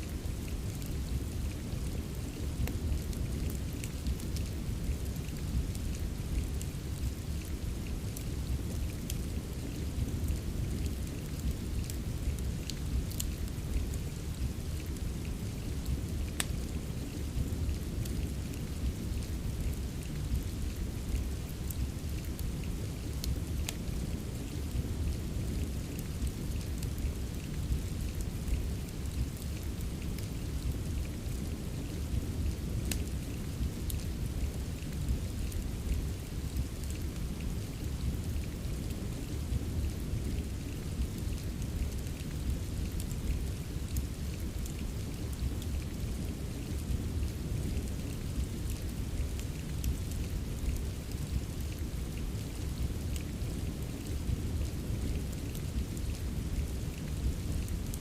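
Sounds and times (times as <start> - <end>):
steady rain: 0.0 - 58.0
wood fire crackling: 0.1 - 58.0.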